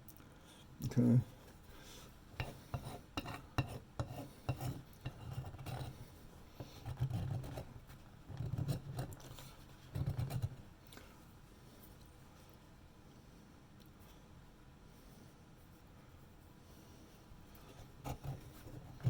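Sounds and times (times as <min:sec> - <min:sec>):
hand file scraping plastic: 0:02.4 - 0:07.7, 0:08.3 - 0:10.6, 0:17.9 - 0:19.0.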